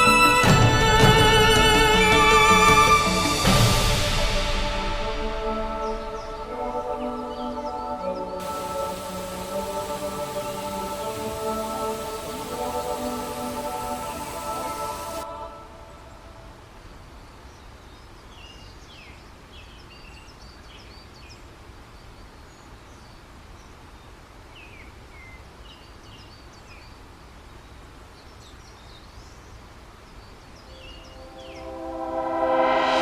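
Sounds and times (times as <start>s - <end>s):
outdoor background rush: 0.0s - 18.3s
small songbirds chirping: 5.8s - 15.2s, 17.0s - 31.7s.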